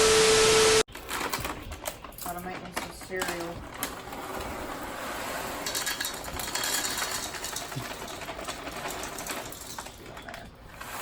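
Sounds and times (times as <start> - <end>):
cereal pouring into a bowl: 4.7 - 9.9.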